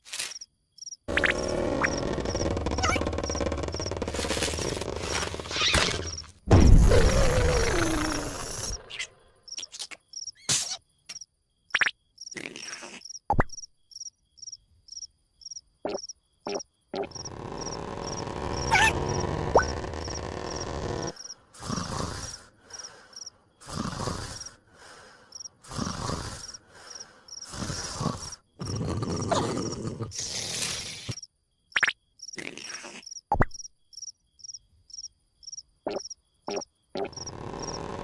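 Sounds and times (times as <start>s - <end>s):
high insect-like chirping: 0.3s - 6.4s, 8.1s - 21.5s, 25.3s - 25.6s, 30.8s - 37.8s.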